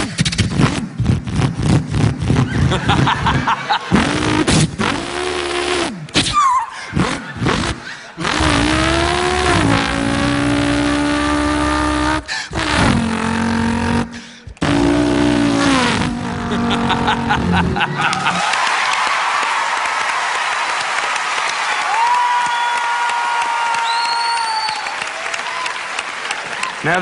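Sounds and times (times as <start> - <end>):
man imitating race car engine: 3.8 - 18.4.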